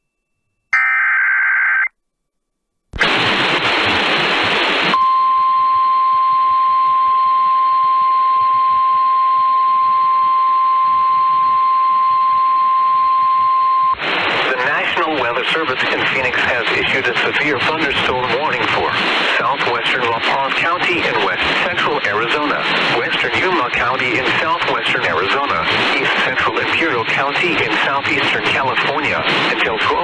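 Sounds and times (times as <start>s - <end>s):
digital data tones: 0.8s - 1.9s
radio static: 3.0s - 5.0s, 14.0s - 30.0s.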